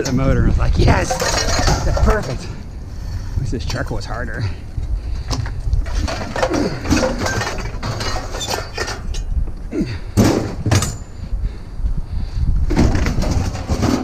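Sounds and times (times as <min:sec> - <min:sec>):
scrap clanking against vehicle body: 0:00.8 - 0:02.6, 0:05.2 - 0:09.3, 0:12.7 - 0:14.0.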